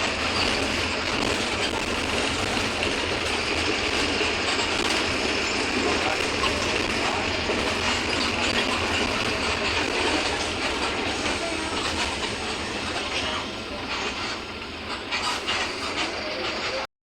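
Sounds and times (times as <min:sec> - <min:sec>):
bus engine running: 0:00.0 - 0:16.8
rolling road noise: 0:00.0 - 0:16.9.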